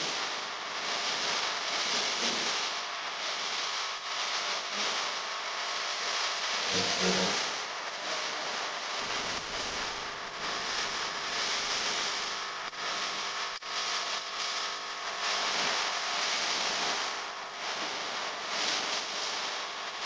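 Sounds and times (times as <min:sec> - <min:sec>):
faint hum: 0:06.6 - 0:15.6.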